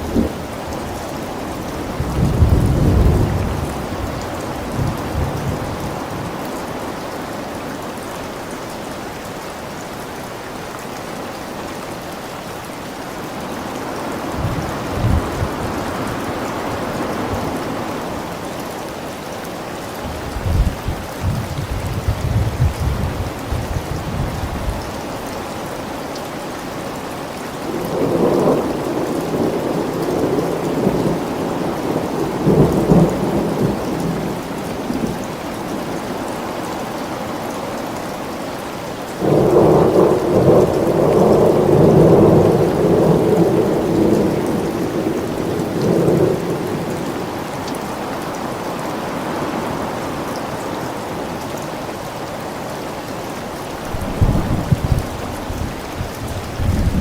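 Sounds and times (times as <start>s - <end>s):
steady rain: 0.0s - 57.0s
thunder rumbling: 14.3s - 18.3s, 39.2s - 47.5s, 53.8s - 57.0s.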